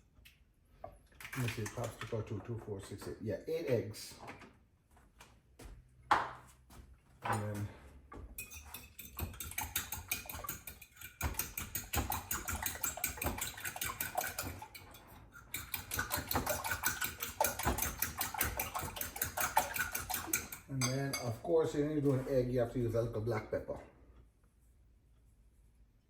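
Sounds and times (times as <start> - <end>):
utensil beating eggs in bowl: 8.4 - 22.3.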